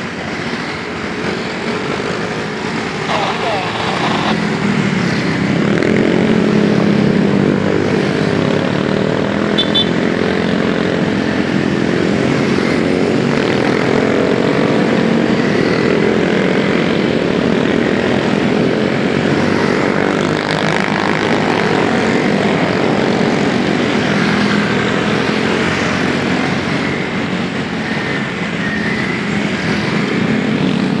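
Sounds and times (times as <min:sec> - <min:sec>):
road and wind noise: 0:00.0 - 0:31.0.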